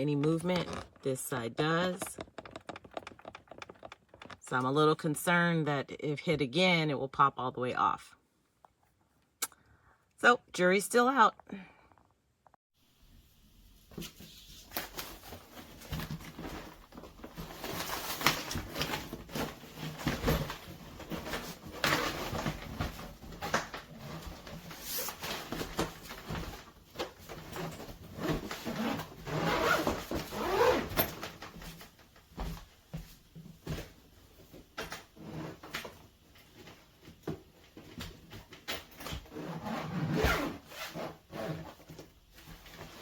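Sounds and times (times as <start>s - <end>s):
suitcases scraping and rustling: 0.0s - 4.6s, 14.0s - 43.0s
suitcases clicking and knocking: 0.1s - 4.6s, 15.6s - 32.7s.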